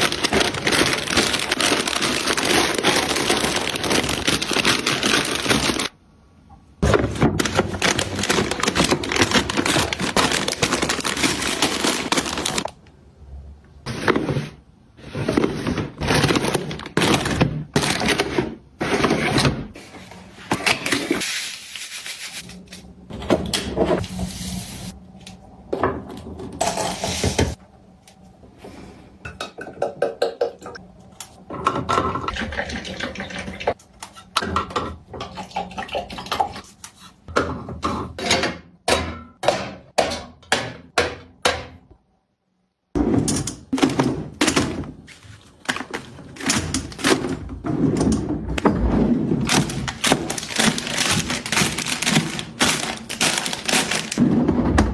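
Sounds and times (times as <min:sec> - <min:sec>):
household items clicking and knocking: 0:00.0 - 0:05.9, 0:06.8 - 0:12.7, 0:45.6 - 0:54.9
rustling handling: 0:00.0 - 0:05.9, 0:06.8 - 0:12.8, 0:49.3 - 0:54.9.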